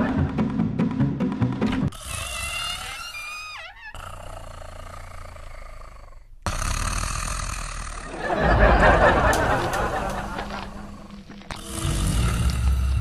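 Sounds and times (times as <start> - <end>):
music: 0.0 - 1.9.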